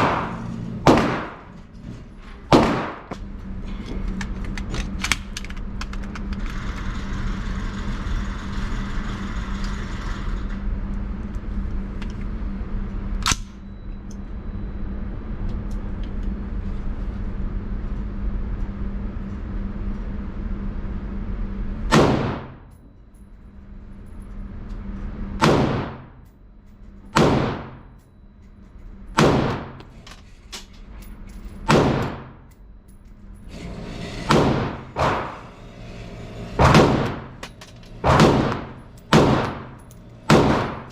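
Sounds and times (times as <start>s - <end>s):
rifle shots with echo: 0.0s - 1.6s, 2.5s - 3.2s, 21.9s - 22.6s, 25.4s - 26.1s, 27.2s - 27.8s, 29.2s - 29.8s, 31.7s - 32.3s, 36.6s - 37.4s, 38.0s - 40.9s
low hum and noise: 0.0s - 40.9s
sharp crack: 38.0s - 40.9s.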